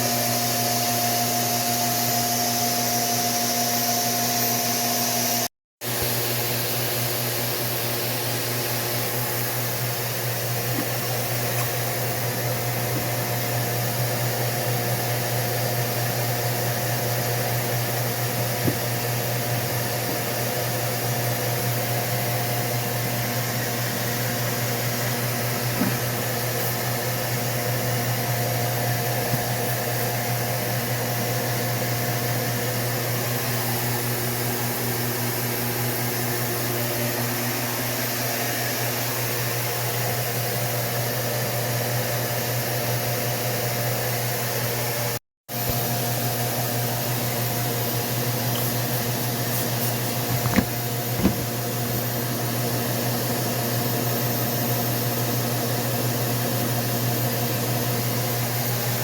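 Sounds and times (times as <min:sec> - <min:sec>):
mechanical hum with hiss: 0:44.7 - 0:59.0.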